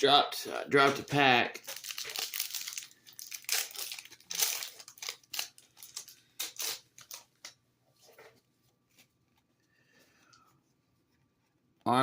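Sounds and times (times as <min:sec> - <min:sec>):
foil wrapper crinkling and tearing: 0:01.5 - 0:07.6.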